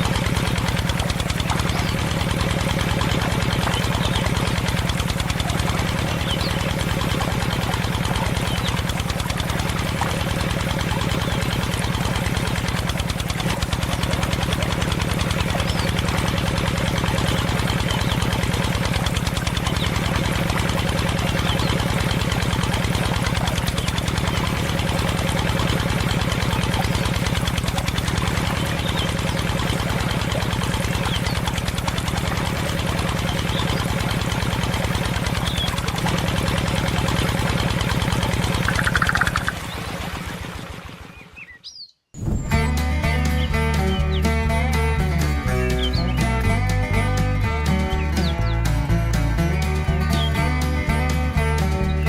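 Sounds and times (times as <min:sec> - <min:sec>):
small engine running: 0:00.0 - 0:52.0
faint bird chirps: 0:38.6 - 0:39.9.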